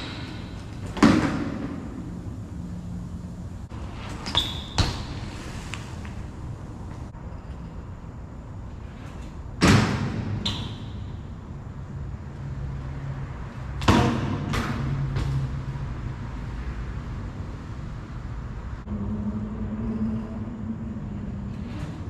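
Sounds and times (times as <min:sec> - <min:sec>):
low steady hum: 0:15.0 - 0:22.0.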